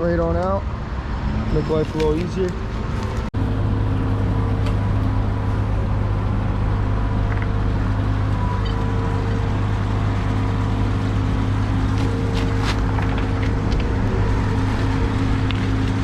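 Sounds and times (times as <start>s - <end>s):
excavator diesel engine running: 3.4s - 16.0s.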